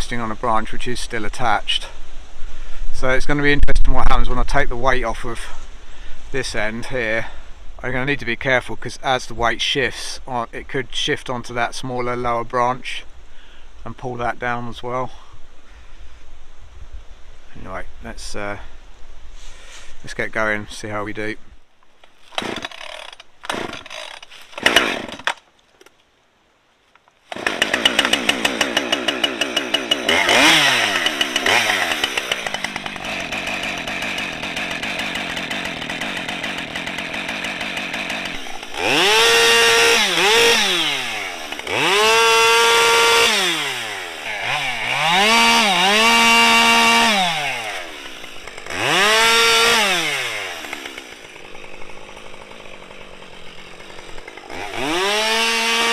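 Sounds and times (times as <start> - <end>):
chainsaw idling: 22.3 - 25.4, 27.3 - 55.9
chainsaw revving to full throttle: 22.3 - 25.4, 27.3 - 55.9.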